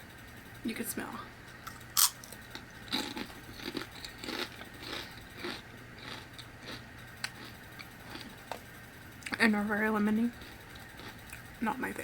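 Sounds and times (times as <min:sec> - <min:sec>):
person chewing crunchy chips: 0:01.6 - 0:08.6, 0:10.4 - 0:11.4.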